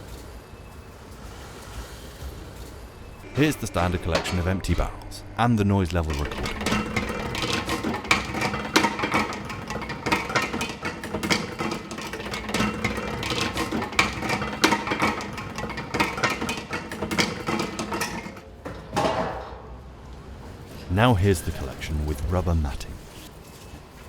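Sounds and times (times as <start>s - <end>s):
steady hum: 3.1s - 10.2s
metal kegs clanking on hard ground: 3.2s - 5.1s, 6.0s - 19.8s.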